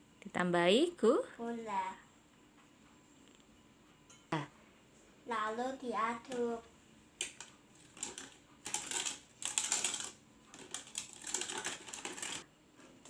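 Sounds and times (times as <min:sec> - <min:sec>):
utensil scraping a pot: 0:07.4 - 0:12.5.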